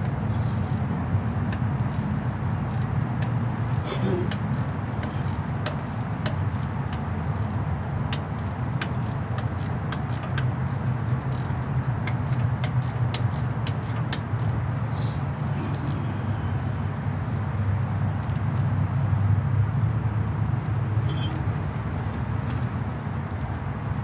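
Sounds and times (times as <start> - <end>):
hand tools clinking on metal: 21.0 - 21.6.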